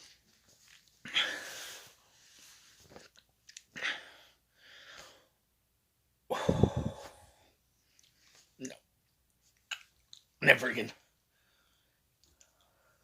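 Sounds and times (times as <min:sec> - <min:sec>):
man exhaling sharply: 0:06.3 - 0:07.3
mouth noises: 0:06.3 - 0:07.3.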